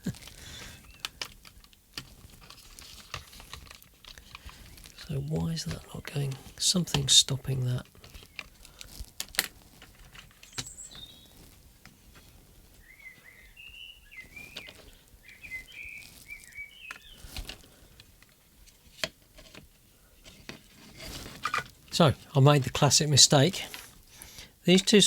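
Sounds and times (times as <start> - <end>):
bird chirping: 10.3 - 11.6, 12.7 - 17.4.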